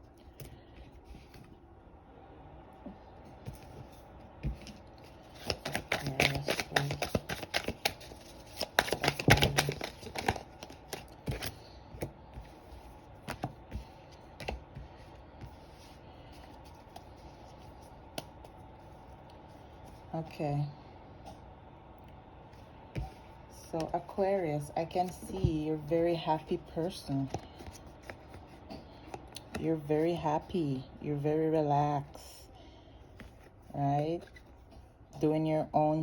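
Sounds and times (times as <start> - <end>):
cards being shuffled: 3.4 - 18.6.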